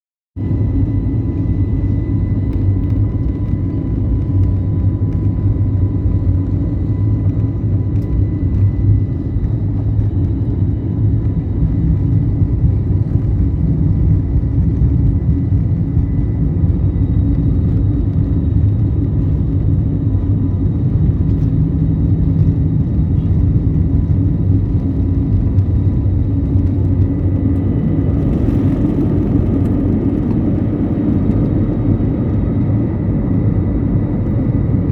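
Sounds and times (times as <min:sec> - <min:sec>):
airliner taking off rumble: 0:00.4 - 0:34.9.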